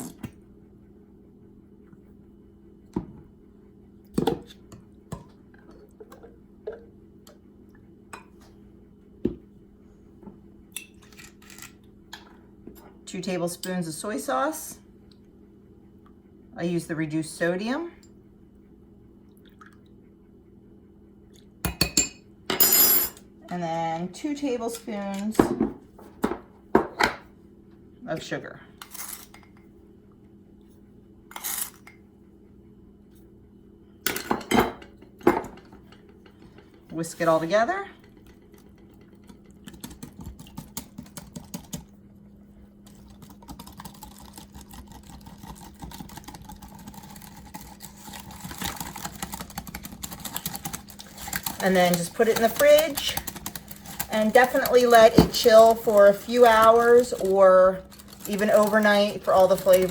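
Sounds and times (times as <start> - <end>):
spoon scraping mixing bowl: 44.4 - 59.9.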